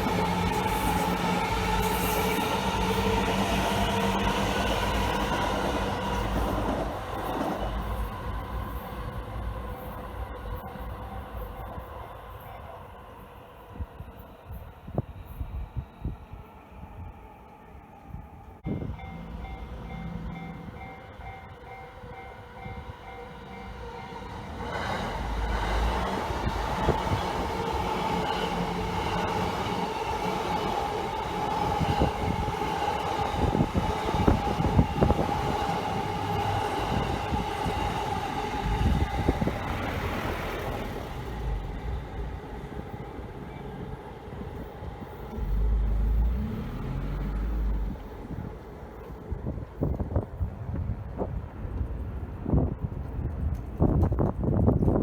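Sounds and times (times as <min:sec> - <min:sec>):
train wheels clacking on rails: 0:00.0 - 0:10.9
train passing with whine: 0:00.0 - 0:55.0
wind buffeting microphone: 0:18.0 - 0:55.0.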